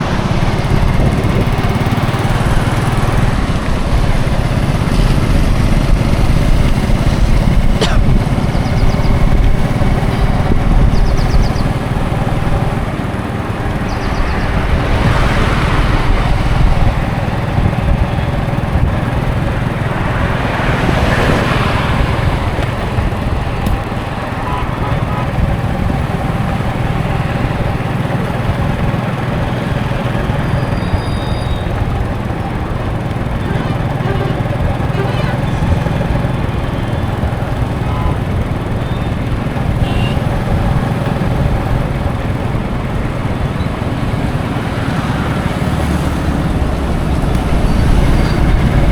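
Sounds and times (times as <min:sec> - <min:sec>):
highway traffic rumble: 0:00.0 - 0:48.9
vehicles passing: 0:00.0 - 0:48.9.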